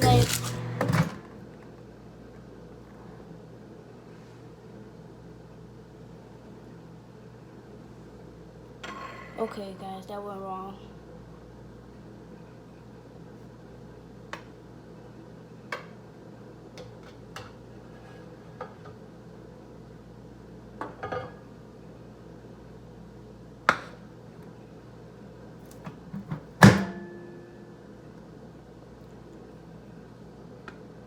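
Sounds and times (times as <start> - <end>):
microwave oven humming: 0.0 - 9.2, 10.7 - 31.0
loud clunk with ring: 26.6 - 27.4.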